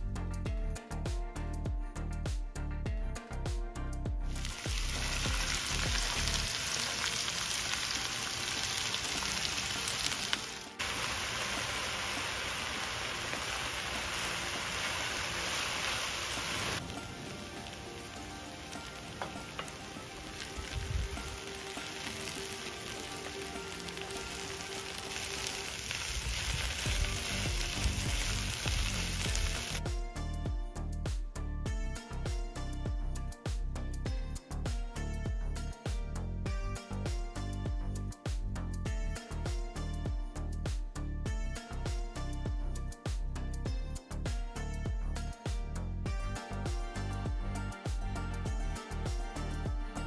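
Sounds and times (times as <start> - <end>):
food sizzling in a pan: 4.3 - 29.8.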